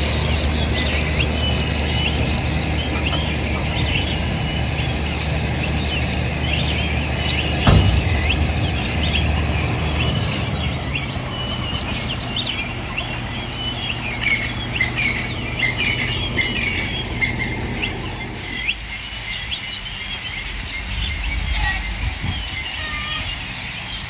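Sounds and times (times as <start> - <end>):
low steady hum: 0.0 - 18.6
small birds chirping: 0.0 - 24.0
knock: 7.6 - 9.1.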